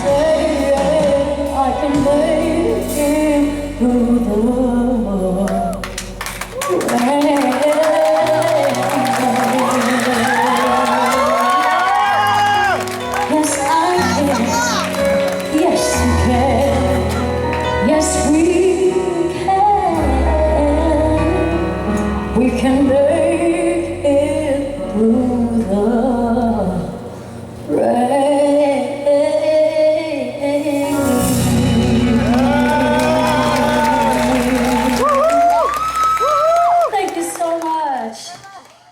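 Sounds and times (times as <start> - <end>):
live band playing: 0.0 - 23.6, 30.6 - 37.4
woman singing: 0.0 - 38.6.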